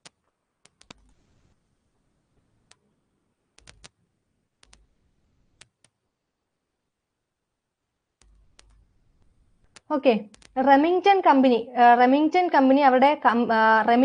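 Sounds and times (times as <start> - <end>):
computer mouse clicks: 0.0 - 1.2, 2.6 - 2.8, 3.6 - 4.0, 4.6 - 4.9, 5.6 - 6.0, 8.2 - 10.6.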